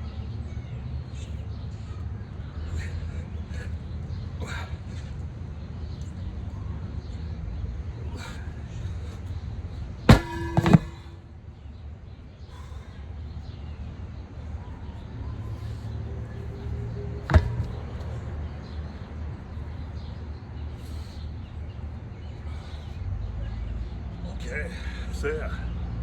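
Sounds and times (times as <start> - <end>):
sharp metal clank: 10.1 - 11.2.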